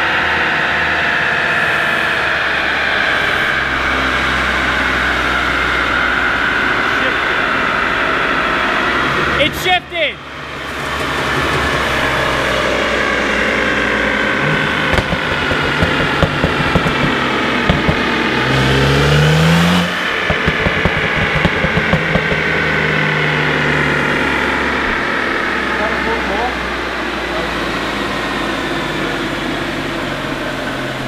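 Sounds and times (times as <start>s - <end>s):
car engine revving on dyno: 0.0s - 9.5s, 10.3s - 31.0s
exhaust pops and crackles: 14.5s - 18.7s, 20.0s - 23.0s.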